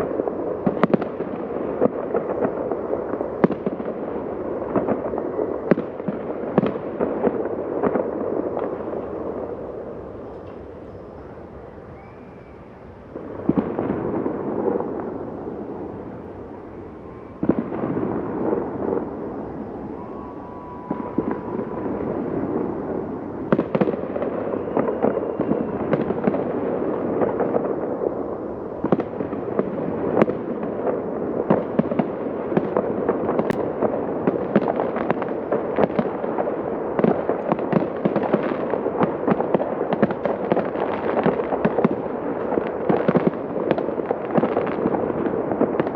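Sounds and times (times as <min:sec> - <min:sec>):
dense crackle of fireworks: 0:00.0 - 0:45.9
faint firework whistles: 0:07.7 - 0:30.4.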